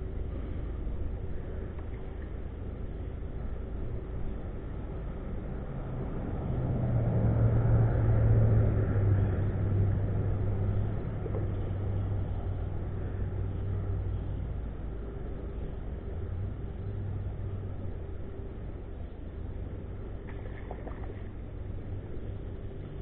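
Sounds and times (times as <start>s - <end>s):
steady rushing noise: 0.0s - 23.0s
vehicle engine passing: 5.5s - 14.4s.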